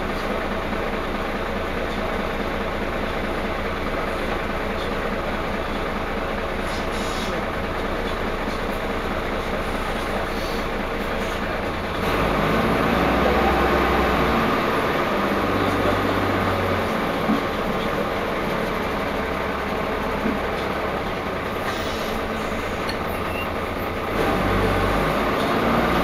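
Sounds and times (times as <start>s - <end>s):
bus diesel engine droning: 0.0s - 26.0s
road and body noise: 6.6s - 26.0s.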